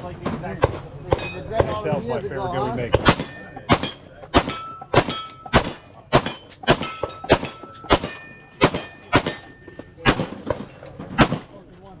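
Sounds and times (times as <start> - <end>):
bullet ringing on steel target: 3.0 - 10.1
pistol shots: 3.0 - 11.6.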